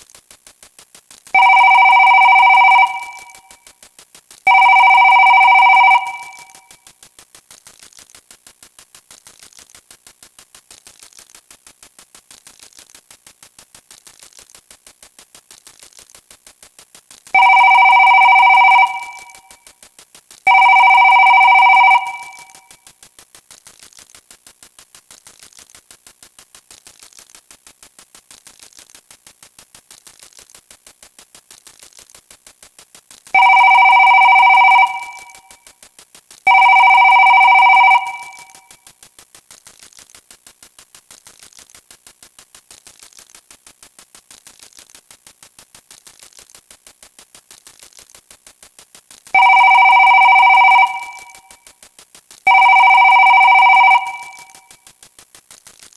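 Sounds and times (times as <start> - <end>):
ringing electronic tone: 1.4 - 3.5, 4.5 - 6.6, 17.4 - 19.5, 20.5 - 22.6, 33.4 - 35.5, 36.5 - 38.7, 49.4 - 51.6, 52.5 - 54.7.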